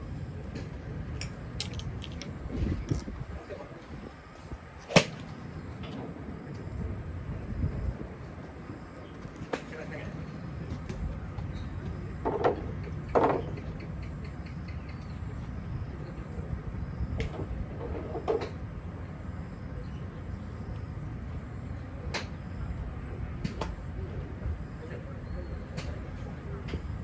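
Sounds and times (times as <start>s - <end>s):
steady low rumble: 0.0s - 8.2s
golf clubs striking balls: 0.5s - 3.6s, 4.9s - 5.4s.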